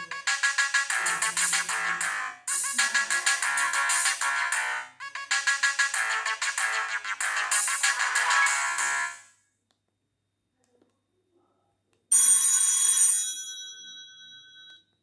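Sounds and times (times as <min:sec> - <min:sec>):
mobile phone ringtone tune: 0:00.0 - 0:09.2.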